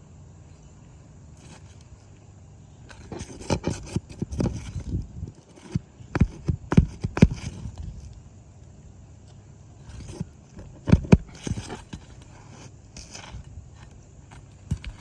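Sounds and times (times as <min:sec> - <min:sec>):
sharp metallic taps: 0:05.6 - 0:07.5
metal tool scraping and prying: 0:09.9 - 0:15.0.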